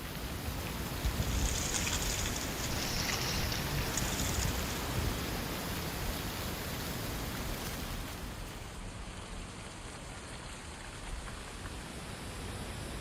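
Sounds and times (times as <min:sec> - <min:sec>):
strong wind blowing: 0:00.0 - 0:08.4
wind rumble on microphone: 0:00.0 - 0:13.0.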